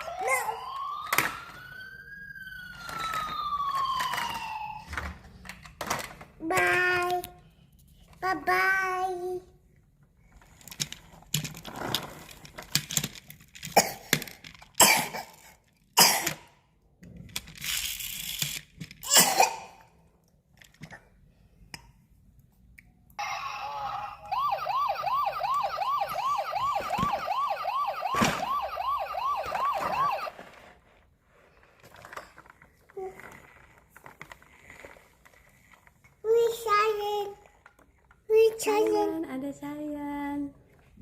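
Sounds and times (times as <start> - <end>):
toy police siren: 0.0 - 5.0, 23.2 - 30.6
toys knocking and rattling: 2.8 - 7.3, 10.3 - 16.4, 17.0 - 19.1.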